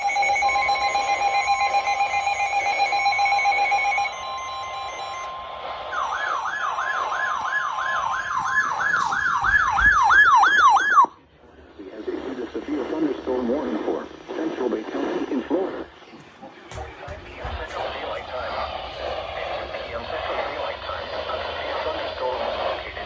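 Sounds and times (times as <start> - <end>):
pulsing electronic beep: 0.0 - 5.4
steady high tone: 0.0 - 7.4
electronic siren sweeping: 0.0 - 11.2.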